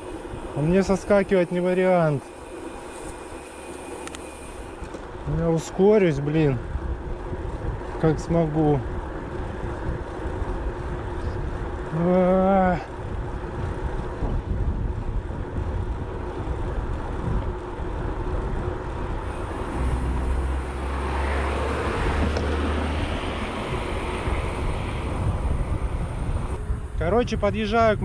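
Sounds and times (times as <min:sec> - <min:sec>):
wind and road noise: 0:00.0 - 0:28.0
vehicle passing: 0:19.3 - 0:26.8.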